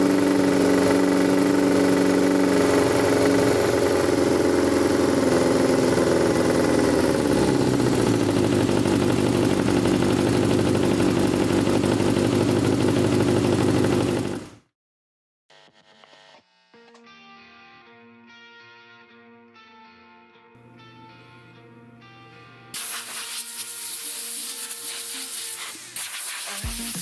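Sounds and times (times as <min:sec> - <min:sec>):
motorcycle engine idling: 0:00.0 - 0:14.6.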